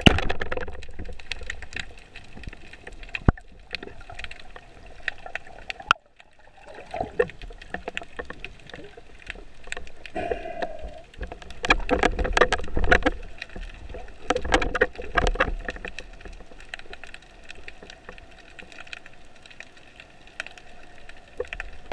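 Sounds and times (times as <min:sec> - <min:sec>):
sharp clicks and knocks: 0:00.0 - 0:01.8, 0:10.6 - 0:17.0
underwater rushing water: 0:00.0 - 0:21.9.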